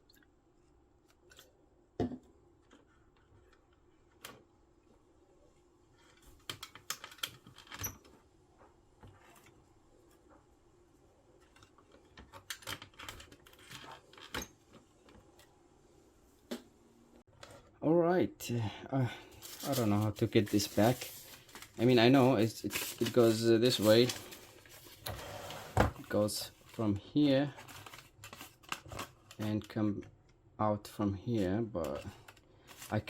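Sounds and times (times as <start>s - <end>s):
clicks and rattles of calculator keys: 6.4s - 7.9s.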